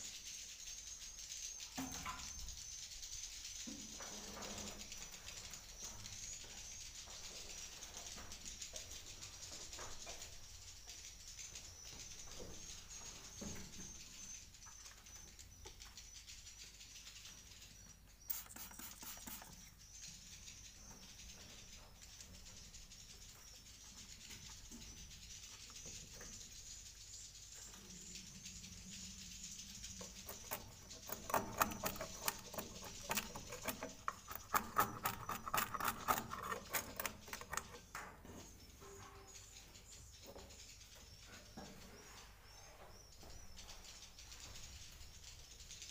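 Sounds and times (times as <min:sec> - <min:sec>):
rapid sharp clicks: 0:29.6 - 0:37.9.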